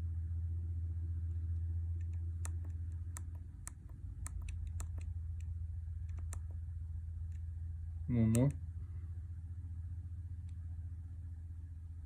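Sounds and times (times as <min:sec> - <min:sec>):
low electrical hum: 0:00.0 - 0:12.0
push-buttons clicking: 0:02.0 - 0:05.5, 0:06.1 - 0:06.6, 0:08.2 - 0:08.6.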